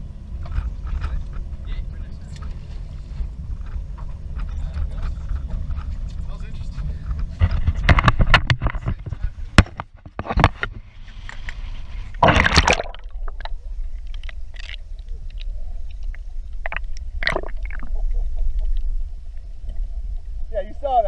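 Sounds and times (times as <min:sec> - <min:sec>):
wind rumble on microphone: 0:00.0 - 0:12.4
water splashing beside boat: 0:09.2 - 0:20.2
big splash: 0:12.2 - 0:13.5, 0:16.6 - 0:18.0.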